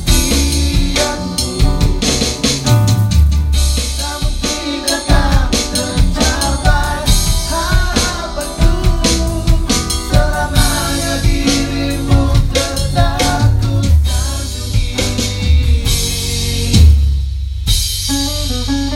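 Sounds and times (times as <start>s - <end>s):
person singing: 0.0s - 2.4s, 3.8s - 17.0s
drum kit: 0.0s - 18.9s
live band playing: 0.0s - 18.9s.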